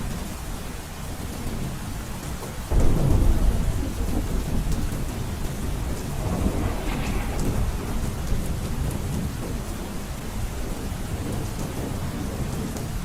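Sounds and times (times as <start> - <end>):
heavy rain on a roof: 0.0 - 13.0
thunder rumbling: 2.6 - 13.0.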